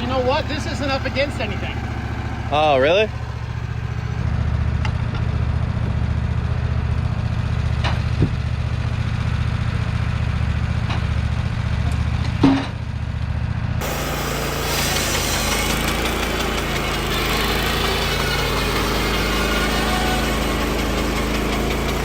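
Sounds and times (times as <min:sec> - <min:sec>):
small engine idling: 0:00.0 - 0:22.0
faint engine knocks: 0:07.7 - 0:08.5.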